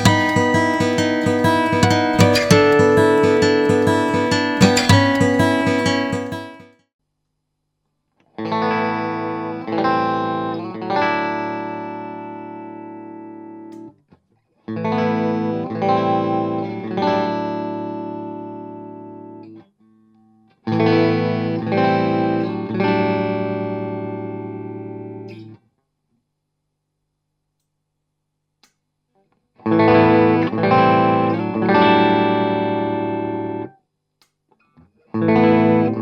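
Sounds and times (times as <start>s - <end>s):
clean electric guitar chords: 0.0s - 6.6s, 29.8s - 33.6s.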